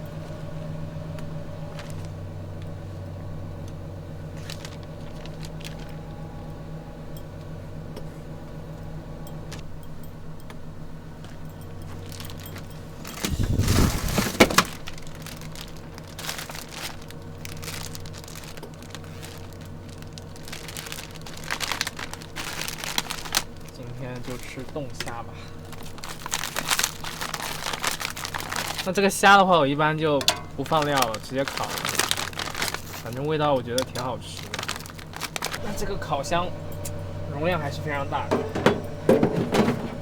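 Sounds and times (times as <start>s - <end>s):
truck engine idling: 0.0s - 40.0s
rustling clatter: 1.2s - 3.0s, 4.2s - 6.6s, 11.2s - 29.4s, 30.1s - 36.0s, 38.2s - 40.0s
cooking gear clicks and clinks: 4.3s - 6.1s, 11.2s - 29.4s, 30.2s - 36.0s.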